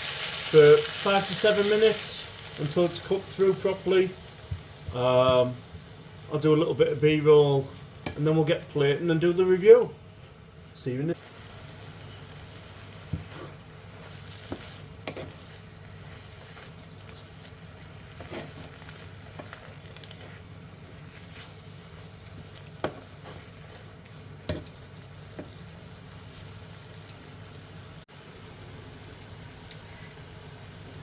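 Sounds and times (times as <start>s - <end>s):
food sizzling in a pan: 0.0s - 9.8s, 11.1s - 31.0s
utensil knocking and scraping pan: 13.1s - 15.5s.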